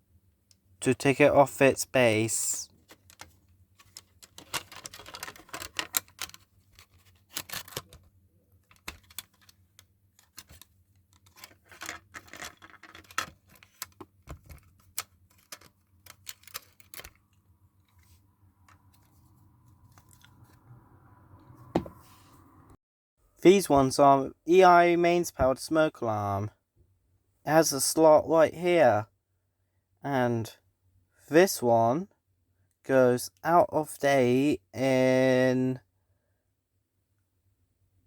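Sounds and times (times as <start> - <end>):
screwdriver on plastic clicks and scrapes: 8.7 - 17.2.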